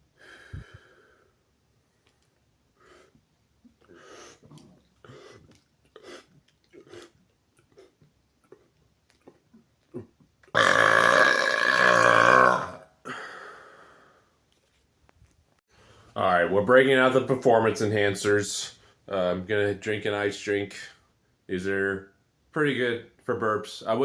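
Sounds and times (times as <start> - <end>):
man breathing: 0.1 - 1.5, 13.0 - 14.3, 15.7 - 16.2
man burping loudly: 9.9 - 13.0.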